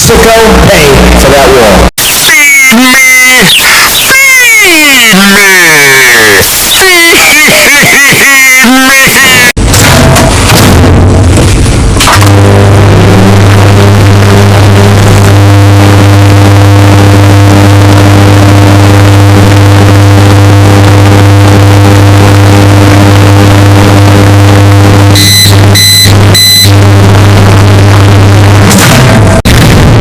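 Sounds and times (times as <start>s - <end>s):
distorted low drone: 0.0s - 30.0s
short high beeps: 25.2s - 26.7s.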